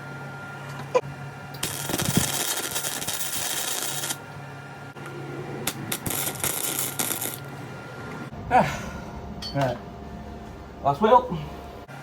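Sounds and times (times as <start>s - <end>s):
arc welding crackle: 1.6s - 4.2s, 5.7s - 7.5s.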